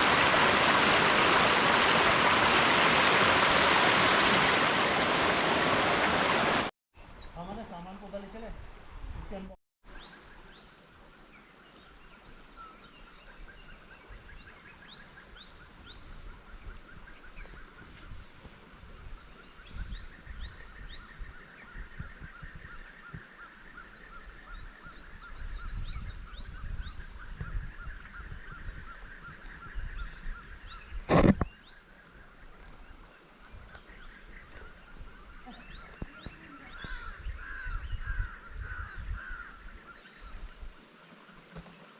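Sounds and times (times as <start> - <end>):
birds chirping: 17.2 - 41.9.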